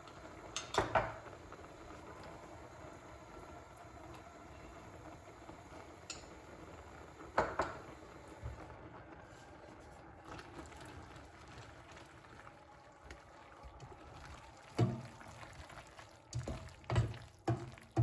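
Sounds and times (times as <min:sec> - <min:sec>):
utensil knocking on dish: 0:16.4 - 0:18.0.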